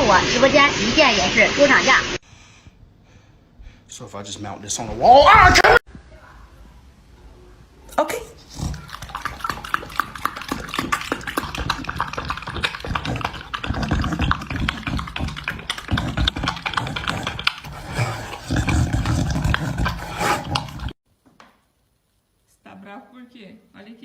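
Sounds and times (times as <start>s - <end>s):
dog making agitated noises: 8.4s - 21.0s.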